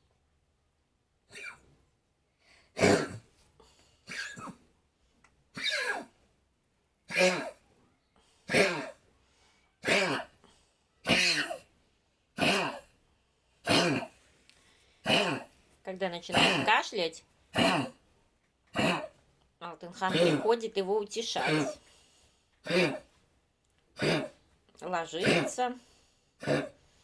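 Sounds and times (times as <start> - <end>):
hoarse hacking coughs: 1.3 - 1.7, 2.8 - 3.4, 4.1 - 4.6, 5.6 - 6.2, 7.1 - 7.6, 8.5 - 9.0, 9.8 - 10.4, 11.1 - 11.7, 12.4 - 12.9, 13.7 - 14.2, 15.0 - 15.5, 16.3 - 16.8, 17.6 - 18.0, 18.7 - 19.2, 20.1 - 20.5, 21.4 - 21.8, 22.6 - 23.1, 24.0 - 24.4, 25.2 - 25.7, 26.4 - 26.8.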